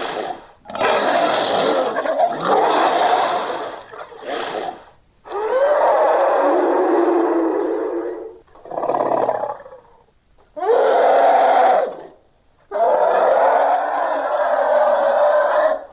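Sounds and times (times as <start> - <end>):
monster roaring: 0.0 - 7.6.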